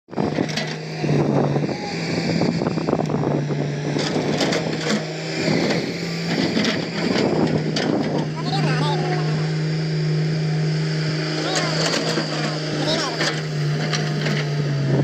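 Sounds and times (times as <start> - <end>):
diesel engine droning: 0.1 - 15.0
machine clattering and scraping: 0.2 - 0.8, 3.8 - 9.6, 11.3 - 14.6.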